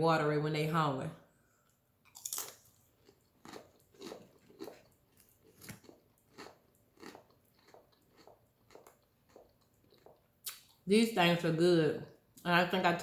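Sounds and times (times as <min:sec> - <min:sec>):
crunchy chewing of chips: 0:02.0 - 0:10.8.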